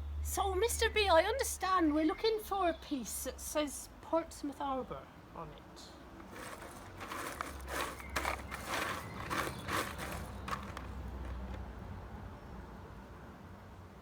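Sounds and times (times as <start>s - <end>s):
puzzle pieces rattling by hand: 6.2s - 11.6s.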